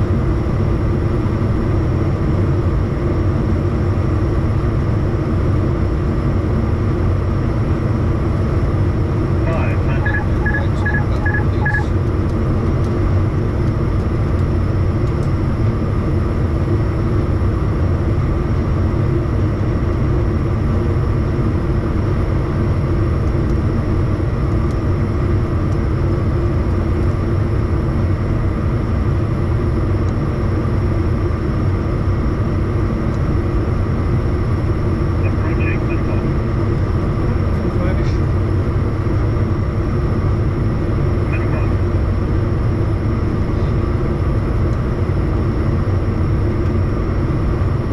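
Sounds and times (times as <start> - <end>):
jet engine rumble in cabin: 0.0 - 47.9
short electronic beeps: 9.5 - 11.9.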